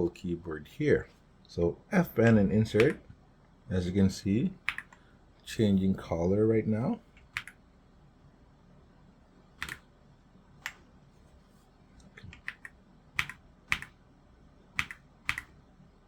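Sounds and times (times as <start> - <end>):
mechanical keyboard keys clacking: 9.6 - 9.8, 12.3 - 13.9, 14.8 - 15.5.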